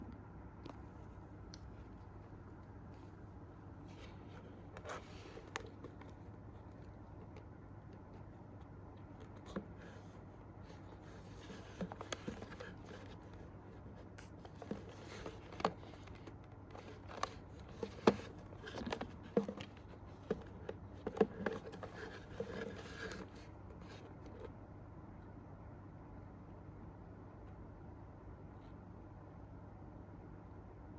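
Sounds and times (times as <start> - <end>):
steady low hum: 0.0 - 30.9
packaging clicks taps and scrapes: 9.0 - 24.5.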